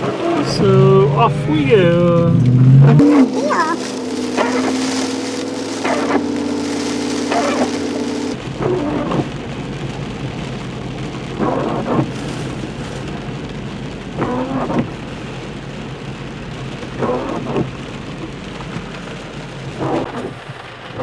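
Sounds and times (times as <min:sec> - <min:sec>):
rain on vehicle: 0:00.0 - 0:21.0
vehicle engine and road rumble: 0:00.0 - 0:21.0.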